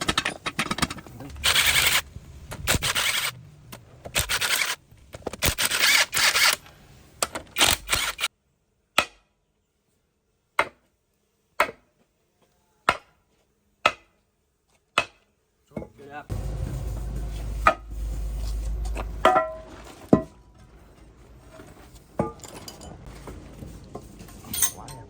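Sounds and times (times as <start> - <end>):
metal parts scraping and clattering: 0.0 - 6.7, 7.3 - 8.3, 16.3 - 25.0.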